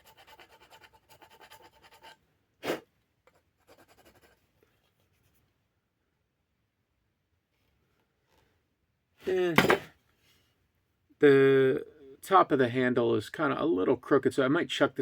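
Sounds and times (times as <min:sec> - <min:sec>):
file strokes on wood: 0:00.0 - 0:02.8
sharp knock: 0:09.6 - 0:09.9.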